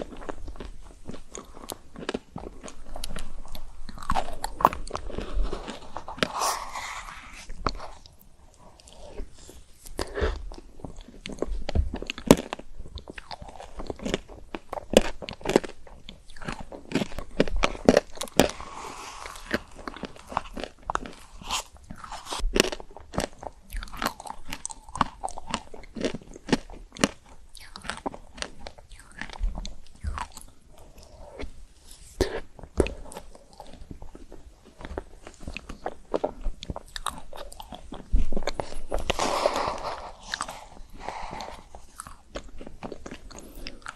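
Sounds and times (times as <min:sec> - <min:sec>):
chewing: 0:00.0 - 0:43.9.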